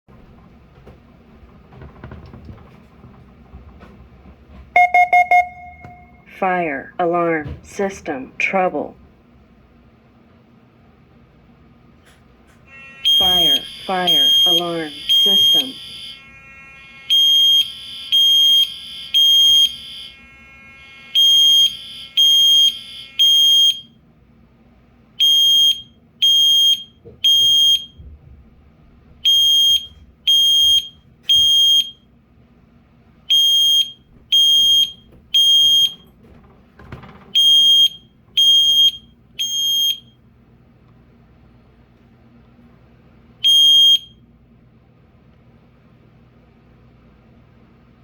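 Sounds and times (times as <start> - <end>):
fire alarm beeps: 4.8 - 6.3, 12.7 - 24.0, 25.2 - 28.0, 29.2 - 32.1, 33.3 - 36.1, 37.3 - 40.2, 43.4 - 44.2.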